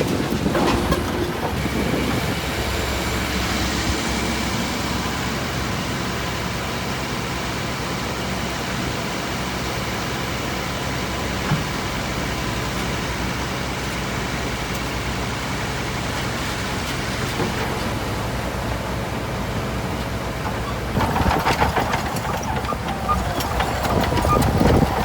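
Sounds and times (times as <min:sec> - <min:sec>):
metal clanks: 0:00.0 - 0:02.0
heavy diesel engine running: 0:00.0 - 0:25.0.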